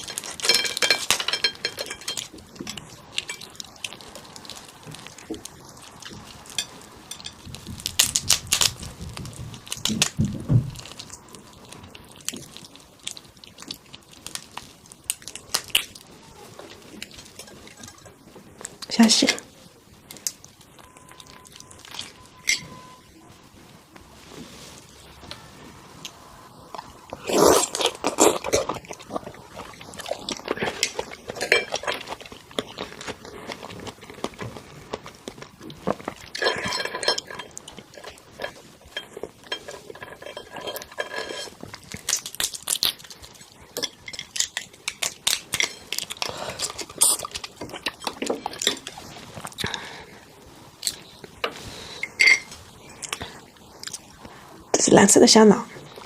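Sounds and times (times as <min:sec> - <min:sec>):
shell cracking and snapping: 0:12.2 - 0:16.0, 0:41.8 - 0:48.9.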